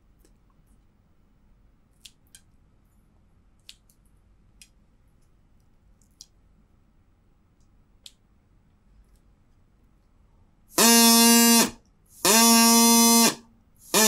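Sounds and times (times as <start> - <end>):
straw reed whistle buzzing: 10.8 - 14.0.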